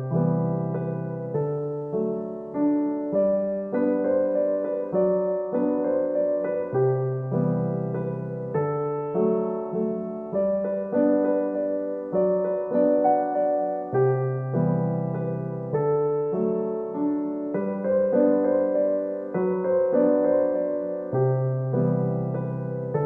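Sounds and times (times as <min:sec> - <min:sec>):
gentle piano melody: 0:00.0 - 0:23.0.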